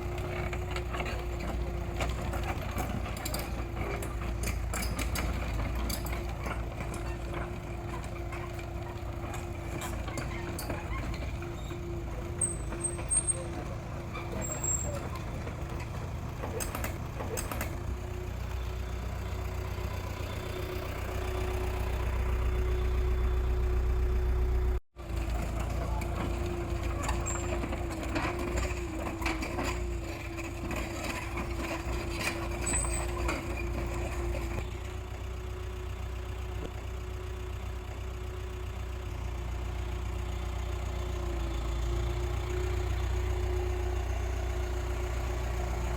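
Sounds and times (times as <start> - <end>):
excavator diesel engine whining: 0.0 - 45.9.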